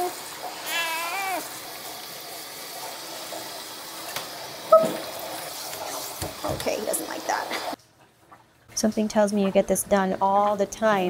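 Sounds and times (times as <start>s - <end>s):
water spraying: 0.0s - 7.8s
cat meowing: 0.5s - 1.5s.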